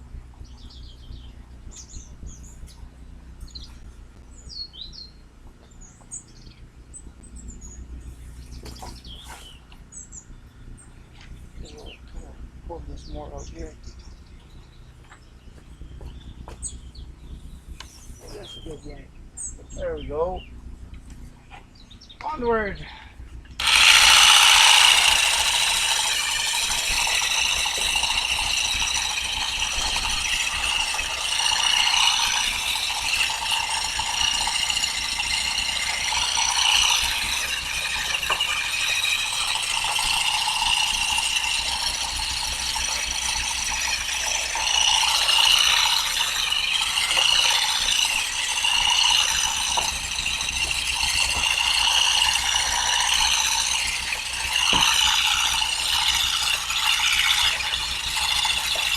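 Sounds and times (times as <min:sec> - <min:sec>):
harvesting tool mechanical rattle: 0:23.6 - 0:58.9.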